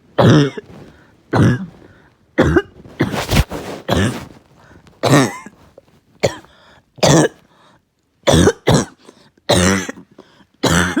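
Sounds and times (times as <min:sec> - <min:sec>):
person coughing harshly: 0:00.2 - 0:04.4, 0:05.0 - 0:05.6, 0:06.2 - 0:07.5, 0:08.2 - 0:11.0.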